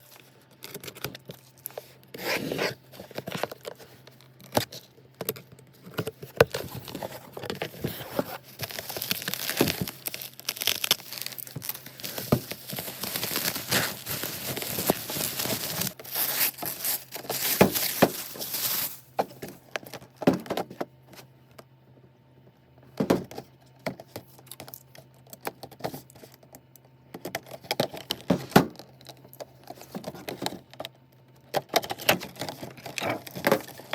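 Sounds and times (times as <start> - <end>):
paper and plastic tearing: 5.9 - 19.0.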